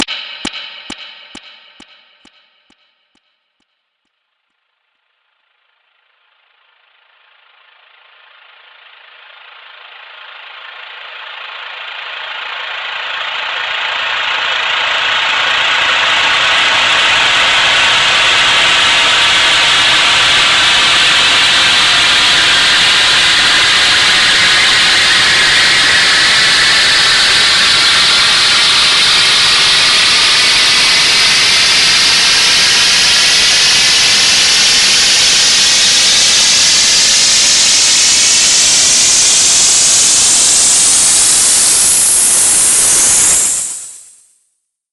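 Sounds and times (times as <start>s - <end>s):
loud even noise hiss: 13.4s - 44.3s.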